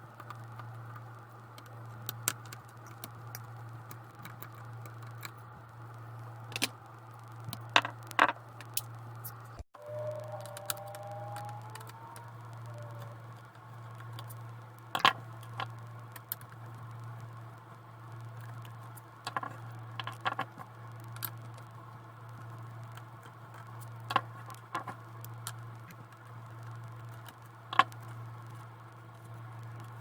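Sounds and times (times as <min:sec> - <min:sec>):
low hum: 0:03.0 - 0:20.1.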